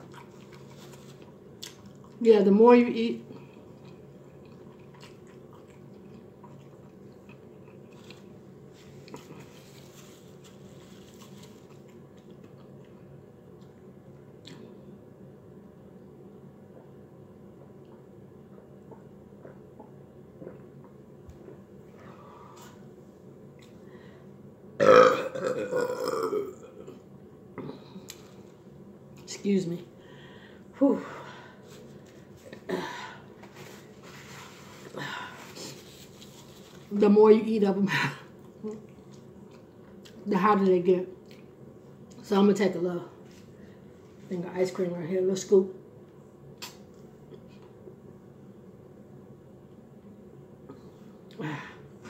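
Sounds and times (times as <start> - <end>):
chewing crunchy tortilla chips: 0.0 - 2.2, 3.3 - 13.8
loud drawn-out burp: 24.8 - 26.9.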